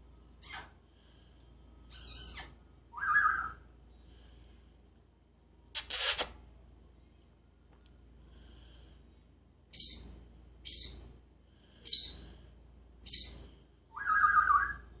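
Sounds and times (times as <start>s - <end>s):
parrot calling: 0.4s - 0.7s, 1.9s - 3.6s.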